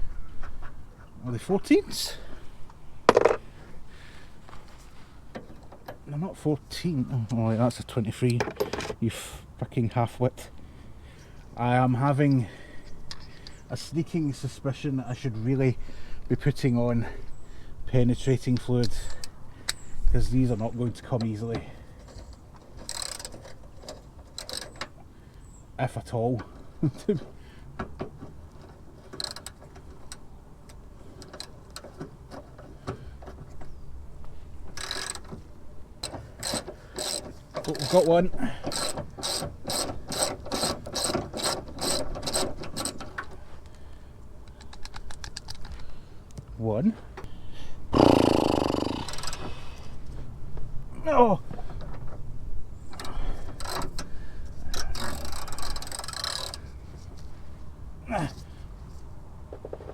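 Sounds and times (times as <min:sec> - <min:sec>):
socket ratchet clicking: 0:22.8 - 0:23.3, 0:34.8 - 0:35.3, 0:38.7 - 0:43.0, 0:54.8 - 0:56.6
steel tools ticking: 0:36.4 - 0:43.0, 0:54.7 - 0:56.6.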